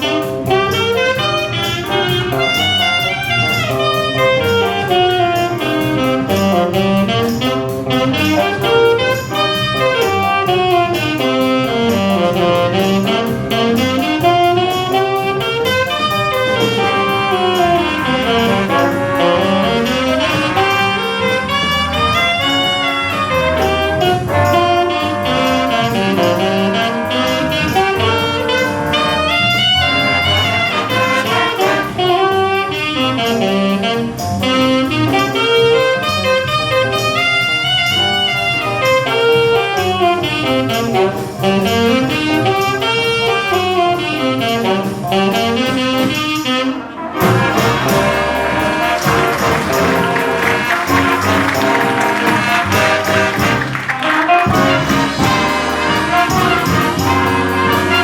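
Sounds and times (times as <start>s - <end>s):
drum groove: 0.0s - 42.6s, 47.2s - 58.0s
jazz big band playing: 0.0s - 58.0s
saxophones and brass horn lines: 0.0s - 58.0s.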